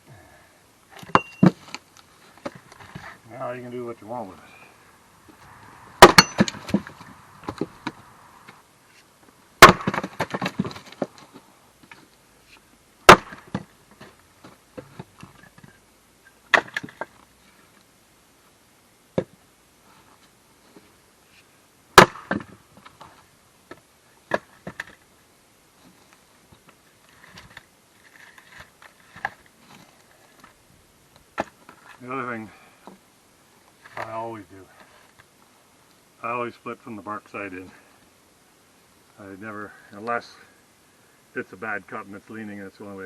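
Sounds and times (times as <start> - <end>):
axe striking wood: 6.0 - 8.0, 9.6 - 10.8, 13.1 - 13.7, 22.0 - 22.6
split wood pieces clattering: 9.6 - 11.4.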